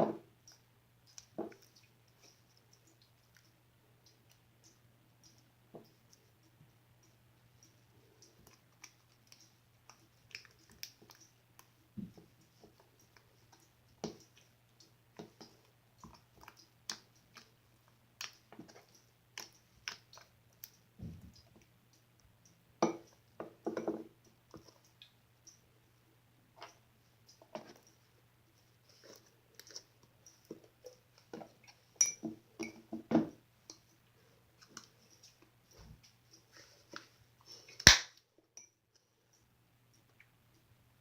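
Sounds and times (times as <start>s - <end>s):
faint electrical hum: 0.0s - 41.0s
slime squishing clicks and pops: 37.8s - 38.1s.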